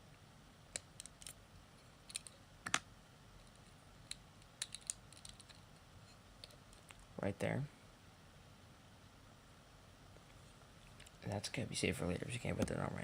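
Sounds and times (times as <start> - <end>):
plastic bricks clicking: 4.5 - 5.6.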